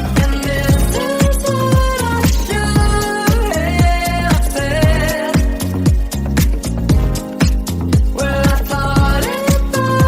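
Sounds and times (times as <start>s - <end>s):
dance-pop music: 0.0s - 10.0s
steady kick drum: 0.0s - 10.0s.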